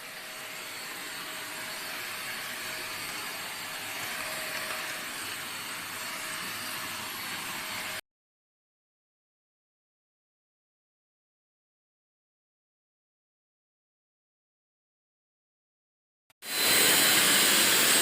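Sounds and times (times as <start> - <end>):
handheld vacuum cleaner running: 0.0 - 8.0, 16.4 - 18.0.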